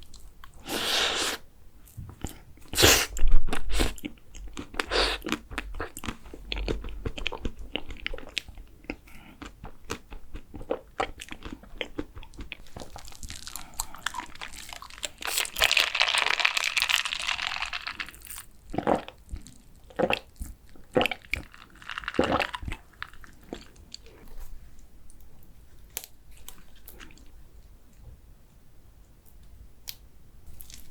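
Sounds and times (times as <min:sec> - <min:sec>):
crunching bites and chewing: 0:02.2 - 0:19.2.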